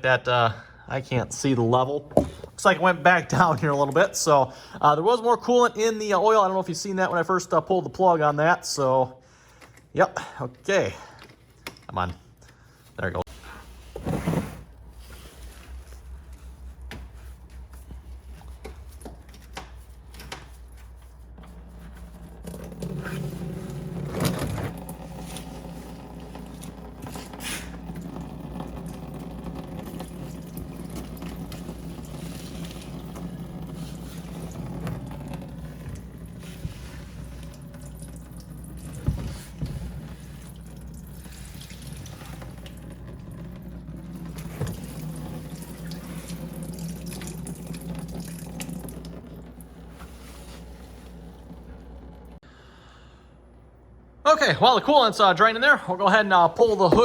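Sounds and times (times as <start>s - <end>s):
coolant pouring into container: 22.1s - 52.2s.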